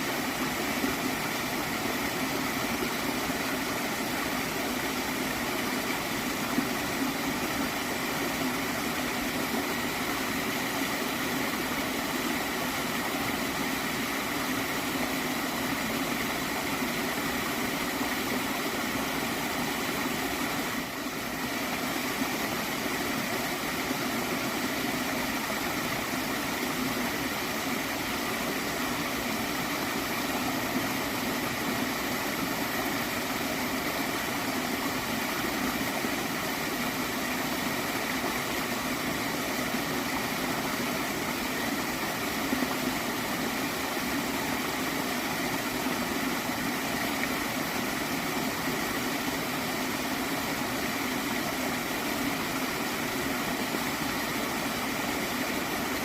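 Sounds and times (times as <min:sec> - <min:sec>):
stream water gurgling: 0:00.0 - 0:56.0.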